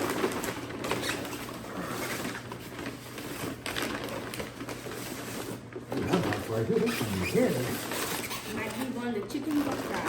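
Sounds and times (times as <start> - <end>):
paper bags crinkling: 0.0 - 10.0.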